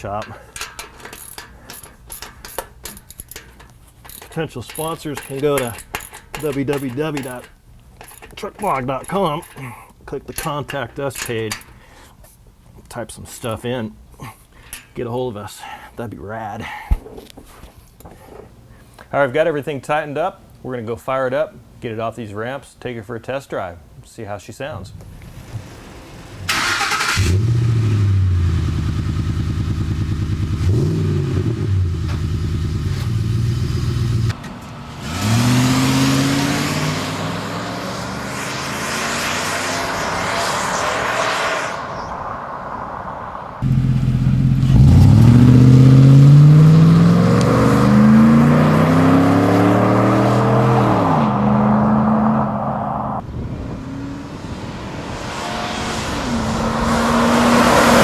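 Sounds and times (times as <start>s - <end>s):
truck engine idling and revving: 25.0s - 58.0s
truck engine starting: 25.0s - 58.0s
truck exhaust accelerating: 25.0s - 58.0s.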